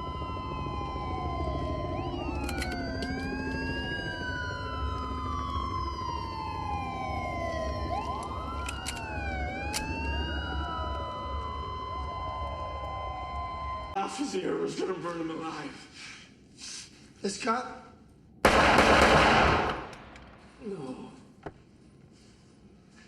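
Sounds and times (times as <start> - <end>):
sirens wailing: 0.0 - 14.2
sharp clicks: 8.0 - 10.0.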